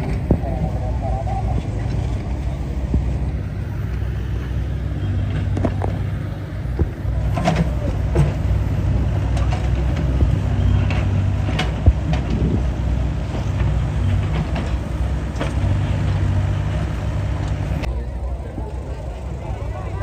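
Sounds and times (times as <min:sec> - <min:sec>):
engine running steadily: 0:00.0 - 0:20.0
sharp clicks and knocks: 0:09.2 - 0:12.6.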